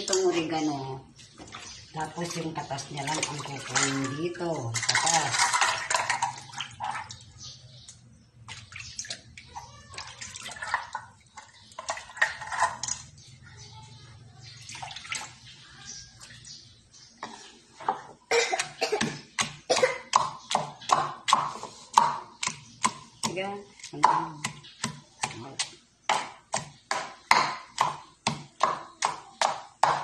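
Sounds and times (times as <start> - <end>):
pestle pounding leaves: 19.0 - 30.0.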